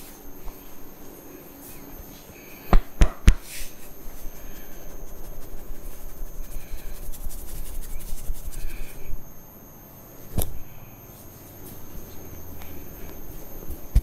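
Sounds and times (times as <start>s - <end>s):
hands rubbing hair: 3.4s - 9.0s.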